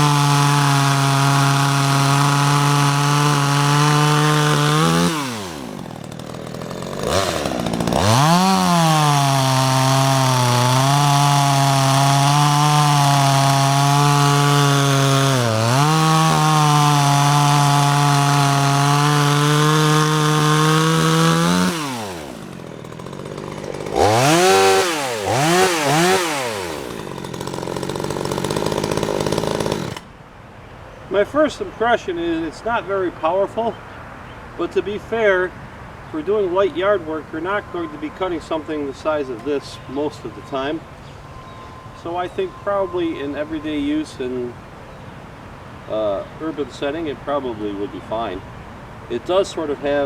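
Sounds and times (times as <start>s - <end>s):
chainsaw cutting wood: 0.0s - 30.2s, 36.1s - 44.6s.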